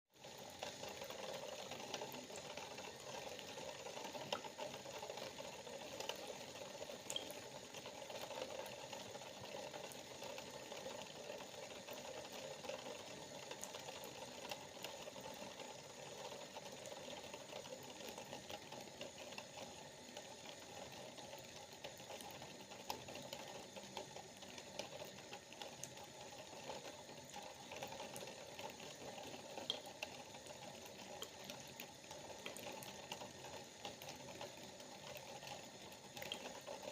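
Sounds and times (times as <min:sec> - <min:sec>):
water droplets dripping: 0:07.1 - 0:07.4.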